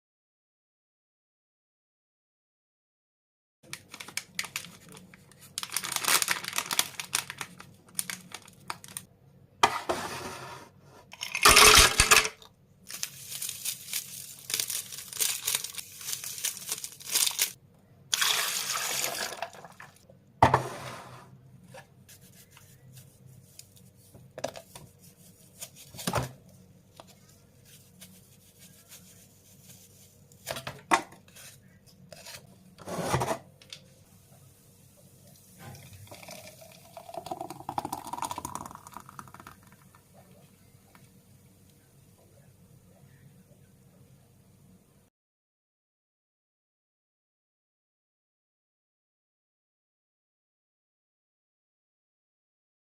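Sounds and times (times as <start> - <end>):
liquid pouring: 18.1 - 20.0, 35.6 - 40.1.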